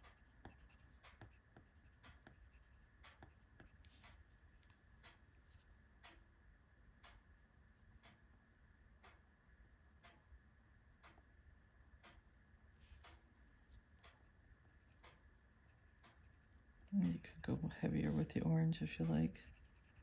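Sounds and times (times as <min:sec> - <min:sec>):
pencil scratching on paper: 0:00.0 - 0:04.2, 0:14.2 - 0:15.0, 0:15.7 - 0:20.0.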